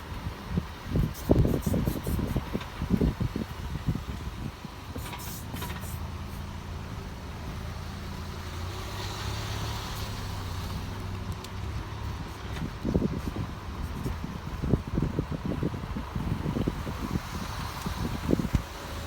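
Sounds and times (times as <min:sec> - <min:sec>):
car driving with low hum: 0:00.0 - 0:19.0
suspension creaking: 0:04.2 - 0:06.6.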